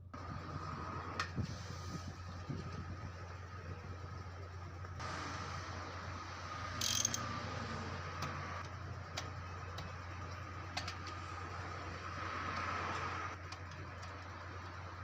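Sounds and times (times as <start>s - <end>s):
sharp metallic clicks: 6.8s - 7.3s.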